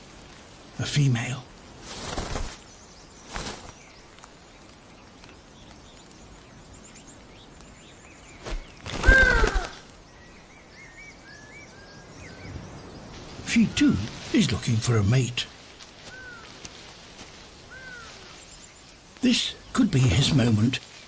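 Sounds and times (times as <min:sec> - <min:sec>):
rustles on forest floor: 0:00.0 - 0:21.0
small birds chirping: 0:00.0 - 0:21.0
loud falling bird call: 0:08.4 - 0:10.0, 0:16.0 - 0:16.8, 0:17.6 - 0:18.4.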